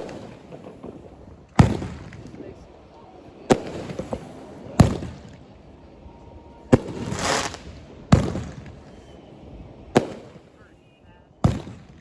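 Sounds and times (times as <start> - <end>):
fireworks bangs: 0.0 - 2.7, 3.4 - 5.6, 6.7 - 10.7, 11.4 - 12.0
firework hissing burst: 6.8 - 9.2.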